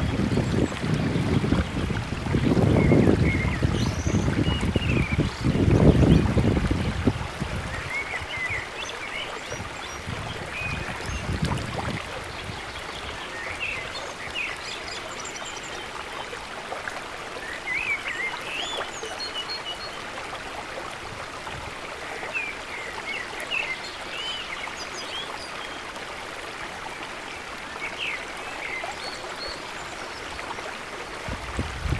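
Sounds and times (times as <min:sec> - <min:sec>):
wind rumble on microphone: 0:00.0 - 0:08.6, 0:09.5 - 0:13.3, 0:31.2 - 0:31.9
trickling stream of water: 0:00.0 - 0:31.9.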